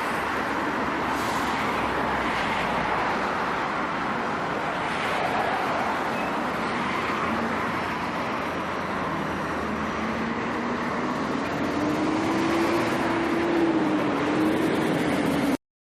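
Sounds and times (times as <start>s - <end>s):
road traffic rush: 0.0s - 15.6s
engine hum rising in pitch: 9.4s - 15.6s.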